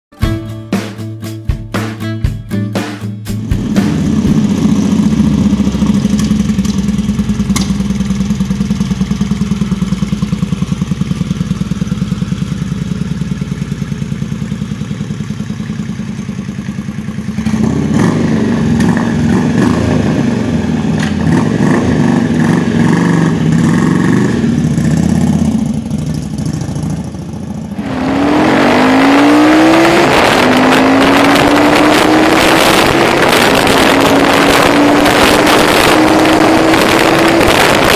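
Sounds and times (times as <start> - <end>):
motorcycle engine revving: 3.4 - 37.9
wind noise on microphone: 30.1 - 37.9.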